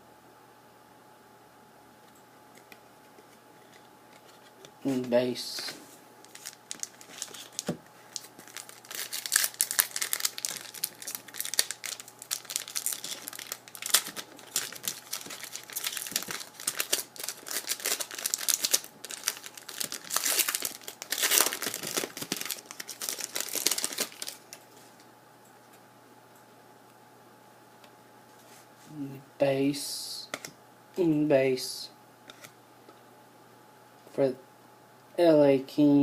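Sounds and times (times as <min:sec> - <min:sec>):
cards being handled: 0:02.6 - 0:24.6
foil wrapper crinkling and tearing: 0:06.2 - 0:24.6.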